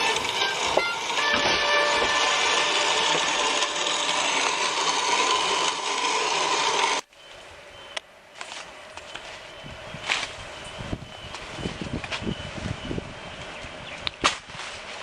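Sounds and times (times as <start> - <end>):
scraping rasping noise: 0.0 - 7.0.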